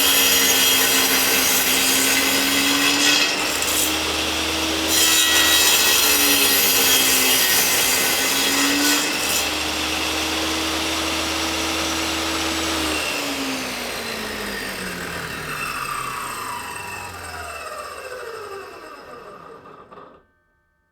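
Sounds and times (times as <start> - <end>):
table saw cutting wood: 0.0 - 20.2
saw blade spinning down: 13.0 - 20.2.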